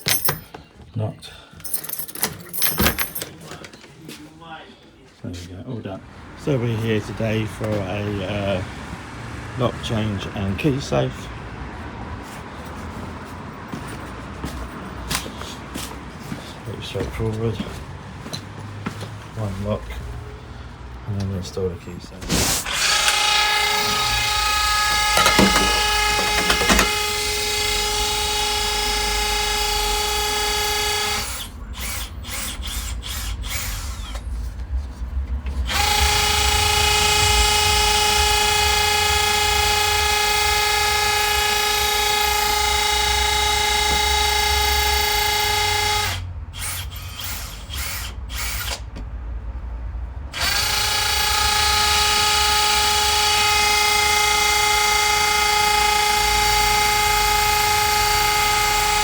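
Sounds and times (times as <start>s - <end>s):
power drill whining: 22.2s - 34.3s, 35.6s - 48.9s, 50.4s - 59.0s.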